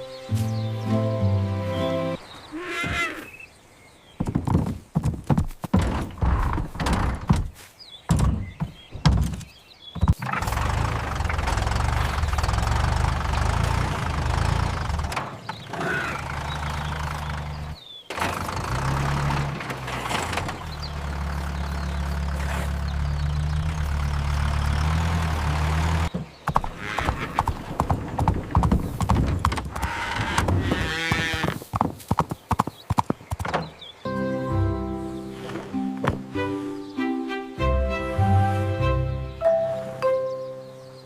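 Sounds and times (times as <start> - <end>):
sharp knocks: 8.1 - 10.3.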